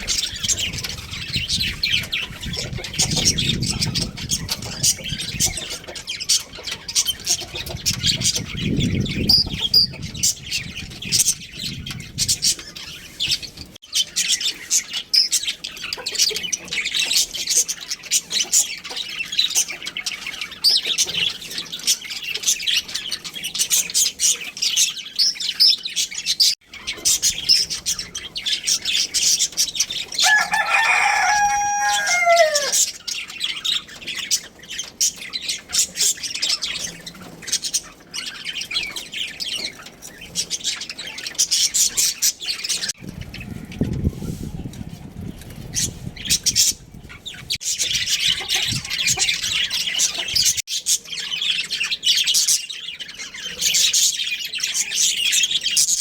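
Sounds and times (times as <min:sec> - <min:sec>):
budgerigars chattering: 0:00.0 - 0:43.9, 0:45.7 - 0:56.0
rooster crowing: 0:30.2 - 0:32.9.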